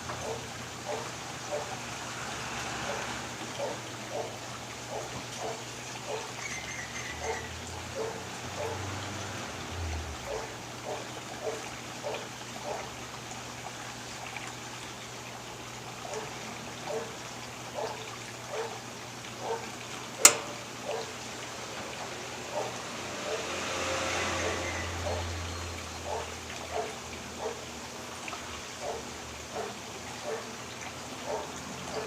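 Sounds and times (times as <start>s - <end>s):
water sloshing in drum: 0.0s - 32.0s
washing machine running: 16.1s - 30.7s
sharp click: 20.2s - 20.6s.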